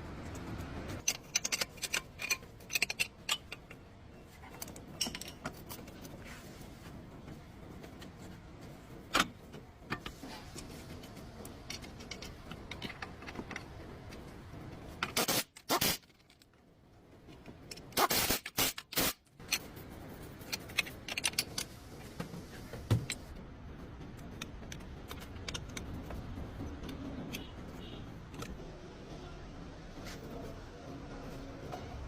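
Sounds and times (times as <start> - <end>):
metal tools clinking and scraping: 1.0 - 6.2.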